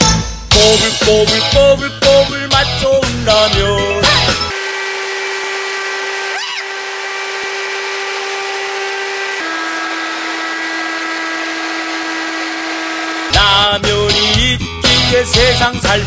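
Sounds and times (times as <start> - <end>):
blower fan whining hum: 4.5 - 13.4.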